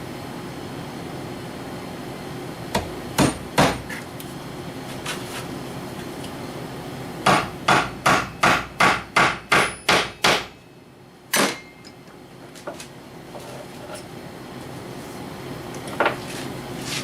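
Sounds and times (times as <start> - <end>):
hammer driving tacks into wood: 2.8 - 3.8, 7.3 - 10.5.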